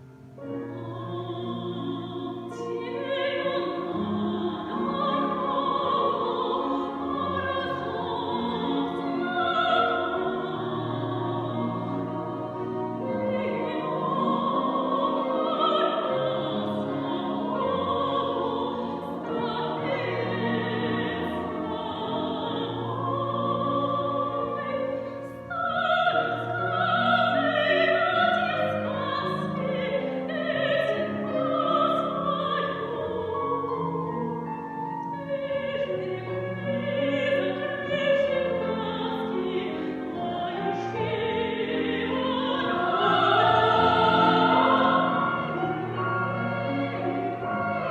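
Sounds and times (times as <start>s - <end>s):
female soloist singing: 0.6s - 34.3s
choir singing operatically: 0.6s - 47.9s.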